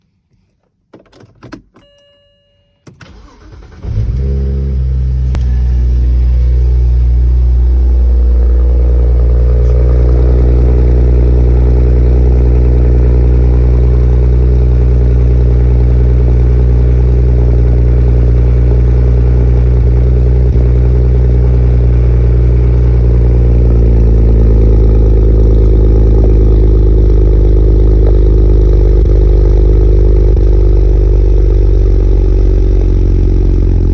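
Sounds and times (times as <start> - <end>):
car engine starting and idling: 2.8 - 33.9.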